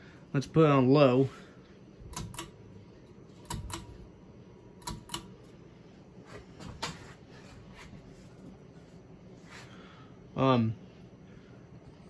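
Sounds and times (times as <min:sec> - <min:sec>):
faint fan hum: 0:00.0 - 0:12.0
fan pull-chain switch clicking: 0:02.1 - 0:02.6, 0:03.4 - 0:04.0, 0:04.8 - 0:05.4.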